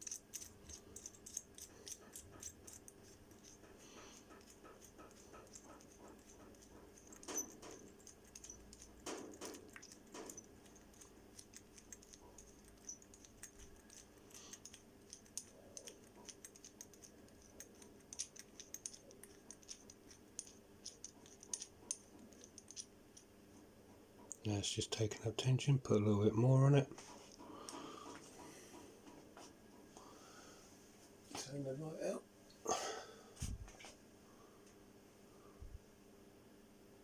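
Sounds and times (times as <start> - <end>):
small metallic clicks: 0.0 - 23.3.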